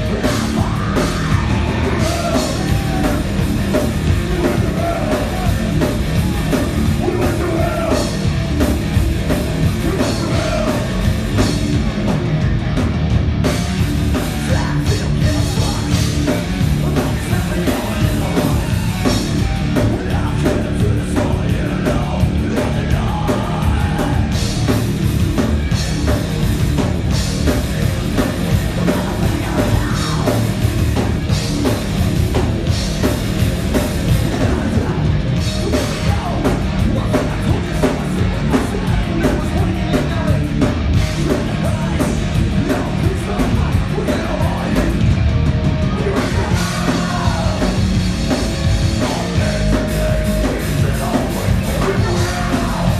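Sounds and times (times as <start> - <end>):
drum kit pounding: 0.0 - 52.9
heavy rock band playing live: 0.0 - 52.9.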